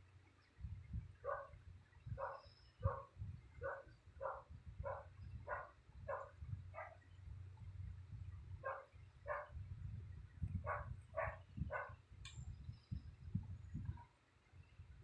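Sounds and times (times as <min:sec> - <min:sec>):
dog barking: 0:01.2 - 0:01.5, 0:02.2 - 0:07.0, 0:08.6 - 0:09.6, 0:10.6 - 0:12.0.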